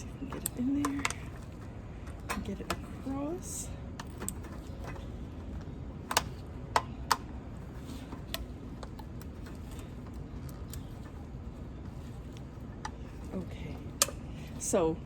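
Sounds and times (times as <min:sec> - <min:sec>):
plastic clicking and tapping: 0:00.2 - 0:03.1, 0:04.0 - 0:11.2.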